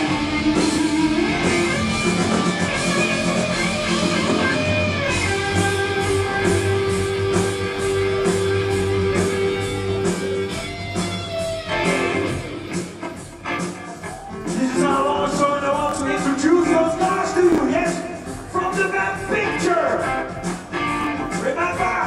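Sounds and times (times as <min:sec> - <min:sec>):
electric guitar lead notes: 0:00.0 - 0:13.9
drums: 0:00.0 - 0:22.0.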